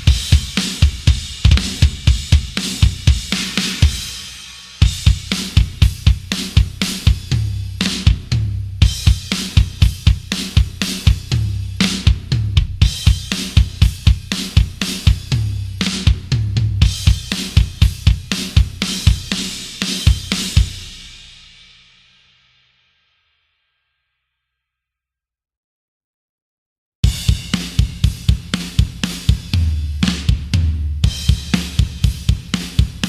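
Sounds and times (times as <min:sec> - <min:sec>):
fast kick drum runs: 0:00.0 - 0:04.2, 0:04.8 - 0:07.4, 0:16.0 - 0:19.4, 0:27.1 - 0:33.0
metal drum kit groove: 0:00.0 - 0:21.6, 0:27.0 - 0:33.0.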